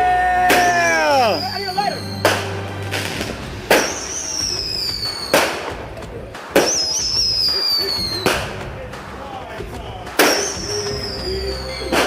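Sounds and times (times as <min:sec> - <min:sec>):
descending firework whistle: 0:00.4 - 0:02.6, 0:03.7 - 0:05.7, 0:06.6 - 0:08.5, 0:10.2 - 0:12.0
fireworks bangs: 0:00.5 - 0:12.0.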